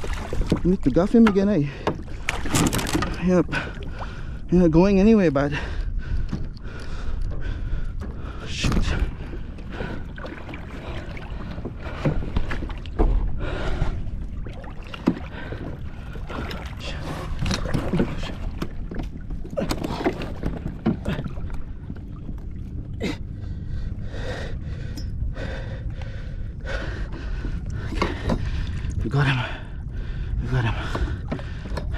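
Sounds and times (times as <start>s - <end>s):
water splashing: 0.0s - 4.2s, 8.6s - 23.2s.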